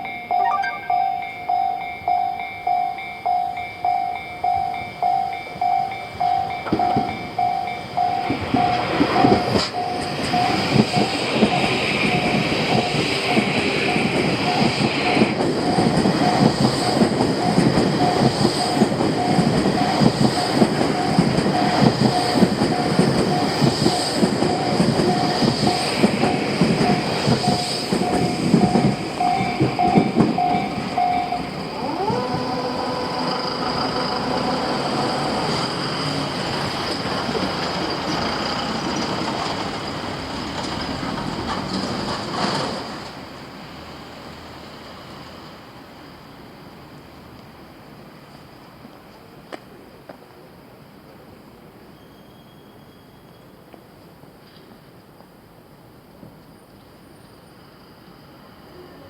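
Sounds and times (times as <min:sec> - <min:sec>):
level crossing bell ringing: 0:00.0 - 0:06.5, 0:27.0 - 0:31.6
train wheels clattering: 0:06.6 - 0:43.3.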